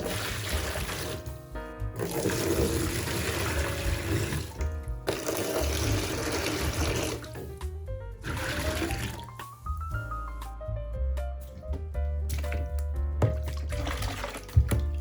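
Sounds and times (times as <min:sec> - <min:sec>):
background music: 0:00.0 - 0:15.0
liquid pouring into vessel: 0:02.0 - 0:07.5, 0:12.3 - 0:15.0.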